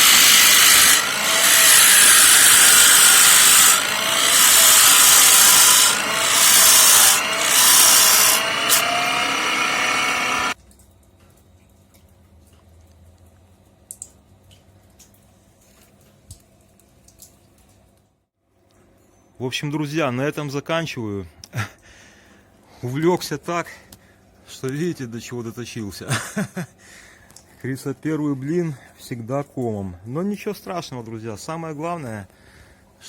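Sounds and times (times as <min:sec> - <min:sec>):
gouge cutting wood on lathe: 0:00.0 - 0:10.6.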